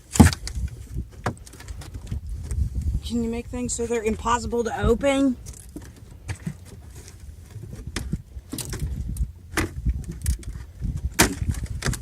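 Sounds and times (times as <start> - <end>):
steady low rumble: 1.8 - 12.0.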